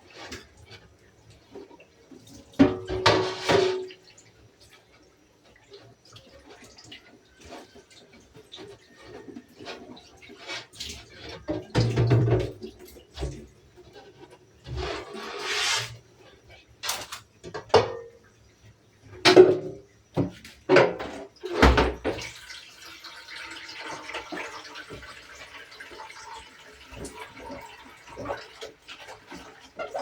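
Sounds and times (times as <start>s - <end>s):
water splashing in a sink: 0.0s - 30.0s
items knocking and clattering: 2.6s - 3.9s, 11.4s - 13.5s, 16.8s - 18.2s, 19.2s - 22.4s.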